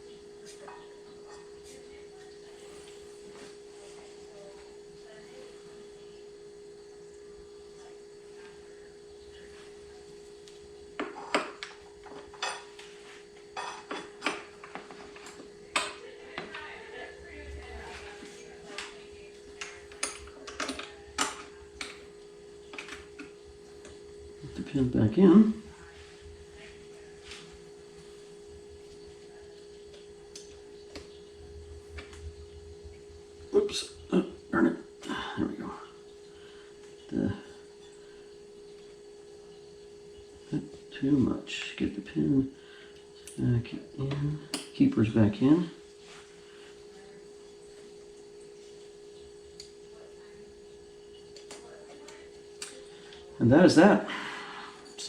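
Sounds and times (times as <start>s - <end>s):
faint steady hum: 0.0s - 55.0s.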